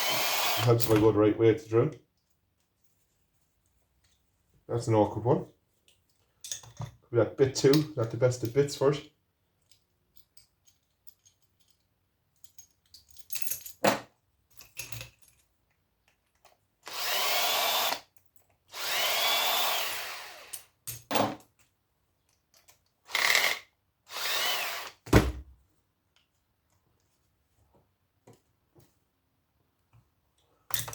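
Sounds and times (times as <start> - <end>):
drill whining: 0.0 - 0.8, 16.8 - 18.1, 18.7 - 20.6, 23.1 - 25.0
metal parts clicking and knocking: 5.9 - 7.0, 9.6 - 16.6, 20.5 - 23.0, 30.7 - 30.9.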